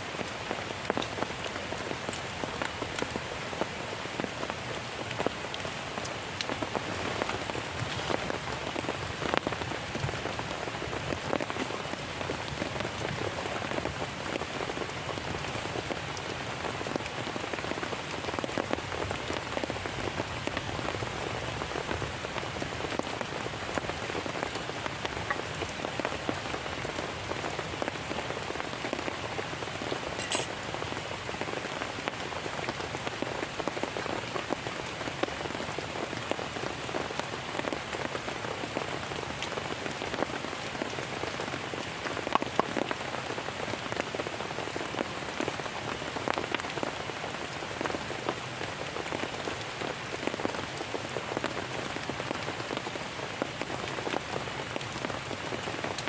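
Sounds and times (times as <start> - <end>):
heavy rain: 0.0 - 56.0.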